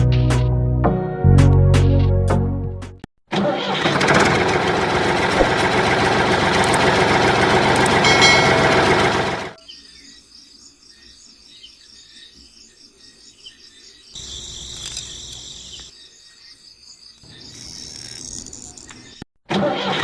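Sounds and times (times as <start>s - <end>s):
crickets chirping: 14.1s - 19.2s.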